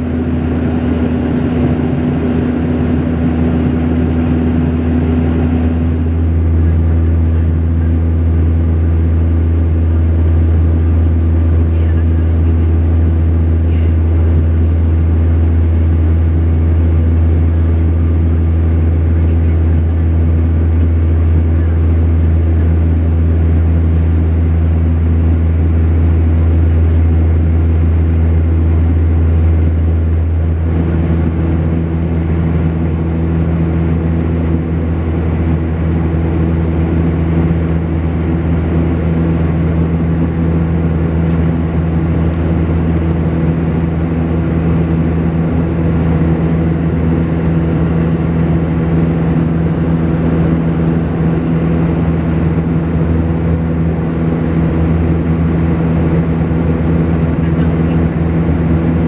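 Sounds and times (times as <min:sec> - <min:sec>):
propeller engines droning in cabin: 0:00.0 - 0:59.0.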